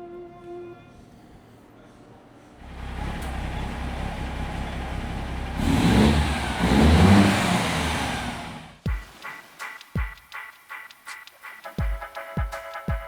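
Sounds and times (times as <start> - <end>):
truck diesel engine revving: 2.6 - 8.8
music with a beat: 8.9 - 13.0.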